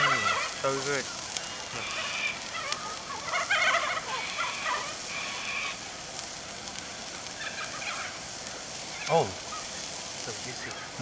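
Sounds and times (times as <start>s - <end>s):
kookaburras laughing: 0.0s - 5.8s.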